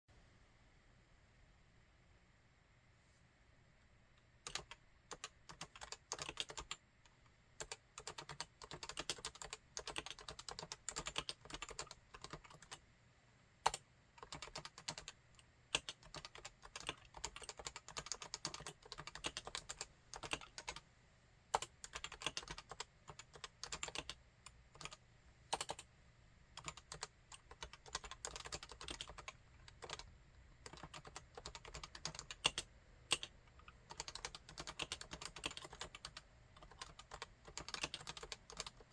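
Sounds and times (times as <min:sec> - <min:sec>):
keyboard typing: 0:04.4 - 0:06.8, 0:07.6 - 0:12.8, 0:13.7 - 0:20.8, 0:21.6 - 0:24.2, 0:24.8 - 0:25.9, 0:26.6 - 0:38.9.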